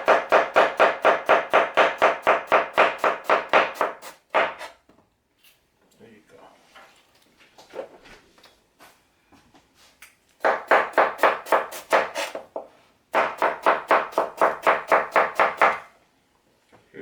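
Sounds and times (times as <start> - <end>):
knife cutting cabbage on board: 10.4 - 12.4.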